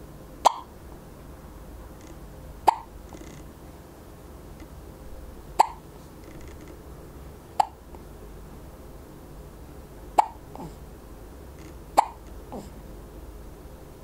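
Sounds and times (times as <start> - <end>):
baby hiccuping: 0.4 - 0.7, 2.7 - 2.9, 5.6 - 5.8, 10.2 - 10.8, 12.0 - 12.7.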